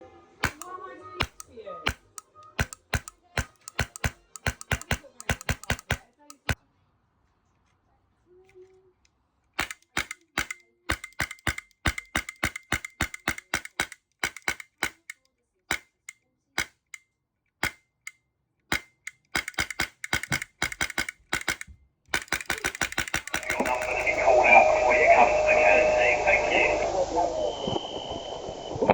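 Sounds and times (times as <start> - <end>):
airsoft gun shots: 0.4 - 6.6, 9.6 - 15.1, 18.7 - 24.2.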